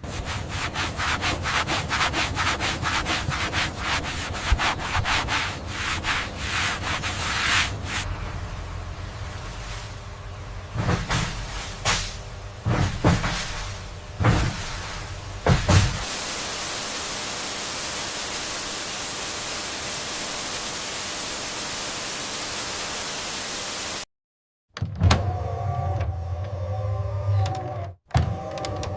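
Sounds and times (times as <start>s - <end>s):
steady even hiss: 16.0s - 24.0s.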